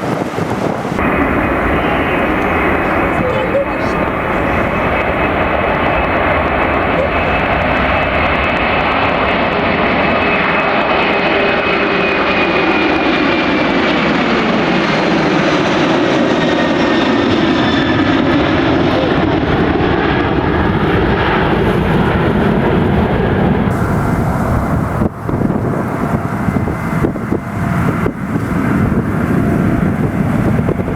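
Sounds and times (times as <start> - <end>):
jet engines roaring: 0.0 - 30.9
high engine whine falling in pitch: 1.0 - 9.2.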